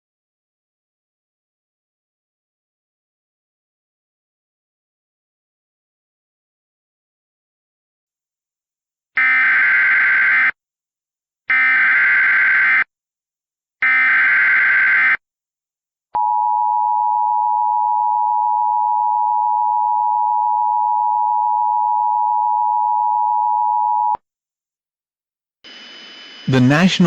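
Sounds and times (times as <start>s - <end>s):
steady alert tone: 26.5s - 27.0s.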